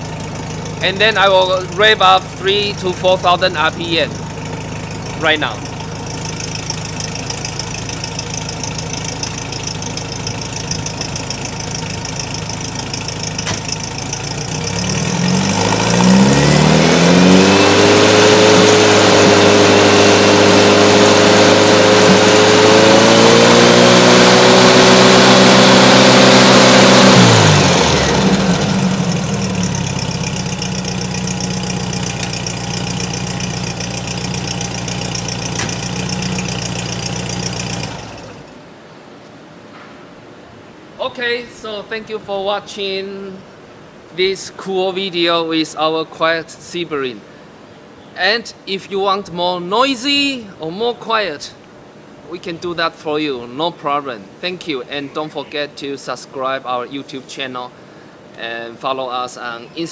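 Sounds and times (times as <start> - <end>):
car engine idling and revving: 0.0 - 38.6.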